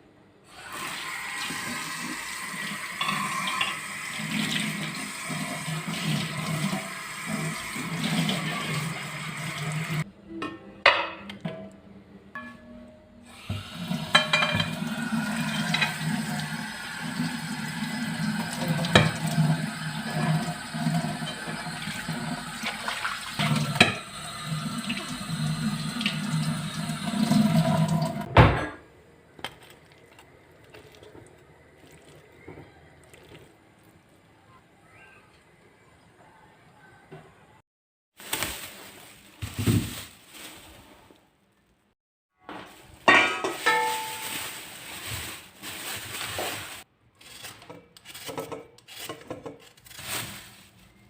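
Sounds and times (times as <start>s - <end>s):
tap water running into sink: 0.7s - 10.0s, 13.5s - 28.3s.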